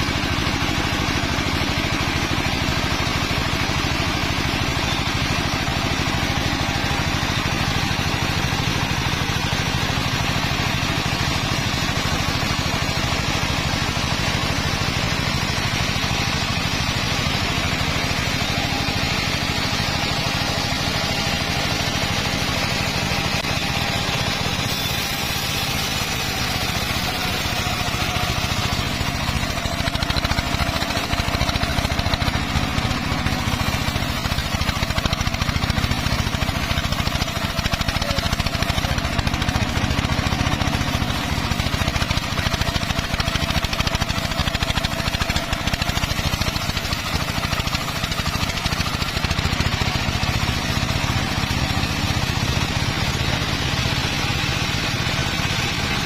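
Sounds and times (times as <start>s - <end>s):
circular saw motor drone: 23.2s - 41.8s.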